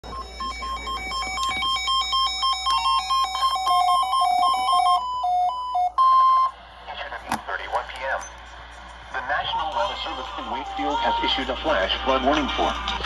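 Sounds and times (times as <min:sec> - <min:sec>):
electronic beeping tune: 0:00.0 - 0:06.5.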